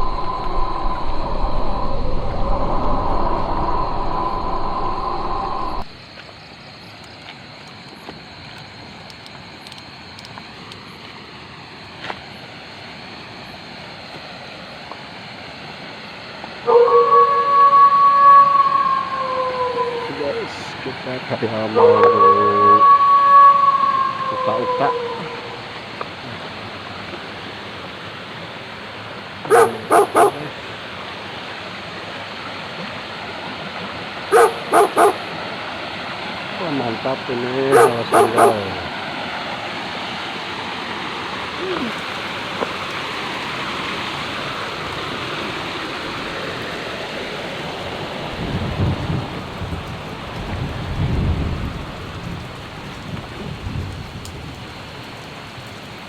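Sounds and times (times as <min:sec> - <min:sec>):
faint high tone: 0:00.0 - 0:05.8, 0:16.7 - 0:20.4, 0:21.7 - 0:25.6
night ambience hiss: 0:00.0 - 0:56.0
dog barking: 0:29.5 - 0:30.5, 0:34.3 - 0:35.3, 0:37.7 - 0:38.8.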